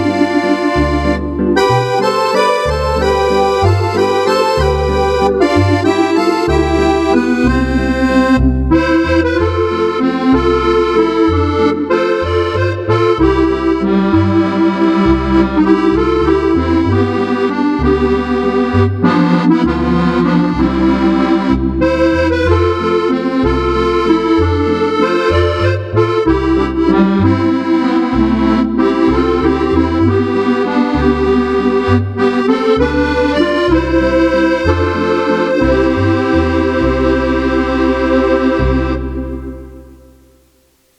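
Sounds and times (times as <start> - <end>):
accordion bass notes: 0.0 - 40.9
accordion melody and chords: 0.0 - 40.9.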